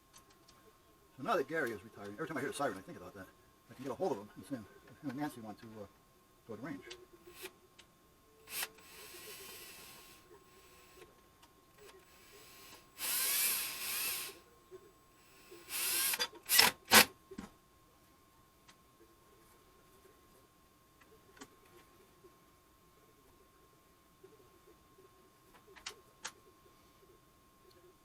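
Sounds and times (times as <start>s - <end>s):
cordless drill driving screws: 8.5s - 11.0s, 12.1s - 14.4s, 15.2s - 17.1s.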